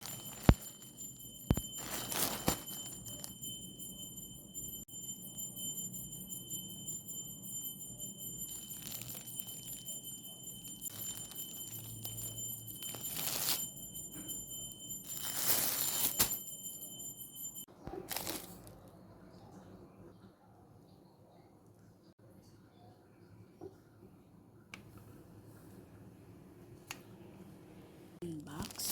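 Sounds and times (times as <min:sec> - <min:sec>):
packaging rustling and crinkling: 0:00.0 - 0:00.8, 0:01.5 - 0:03.3, 0:08.7 - 0:09.6, 0:10.9 - 0:13.7, 0:15.0 - 0:16.4, 0:18.0 - 0:18.8, 0:28.5 - 0:28.9
steady high chiming tones: 0:00.0 - 0:17.7.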